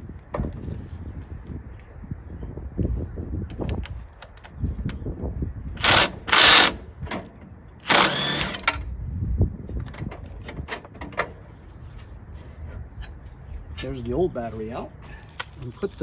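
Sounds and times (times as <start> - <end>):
impact driver running: 5.8 - 6.8, 7.9 - 8.7.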